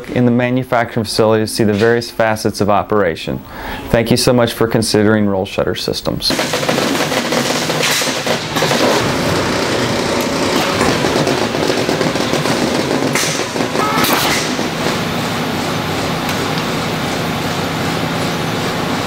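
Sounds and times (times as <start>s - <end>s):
factory machinery clattering: 6.3s - 19.0s
sharp machine knocks: 10.5s - 15.0s.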